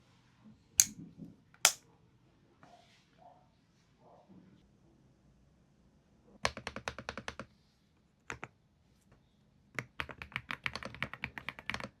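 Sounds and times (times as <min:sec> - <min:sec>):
mechanical keyboard typing: 0:06.5 - 0:07.5, 0:09.8 - 0:12.0.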